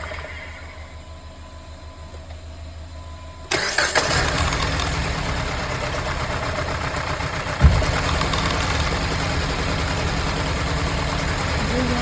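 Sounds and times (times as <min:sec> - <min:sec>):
car engine idling: 0:00.0 - 0:12.0
short thump: 0:07.6 - 0:08.6.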